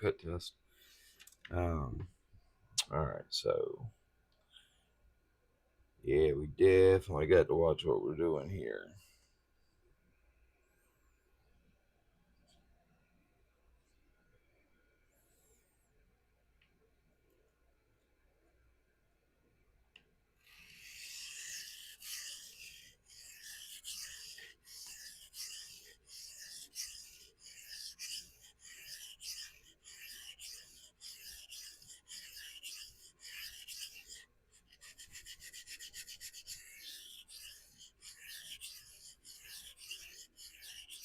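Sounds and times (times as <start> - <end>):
blade scraping on sharpening stone: 20.6 - 41.0.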